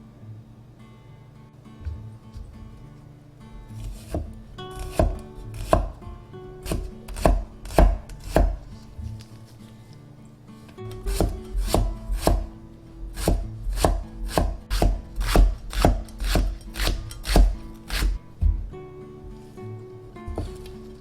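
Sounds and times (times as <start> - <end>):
knife chopping on cutting board: 3.8 - 6.0, 6.6 - 8.7, 11.0 - 12.5, 13.1 - 18.2.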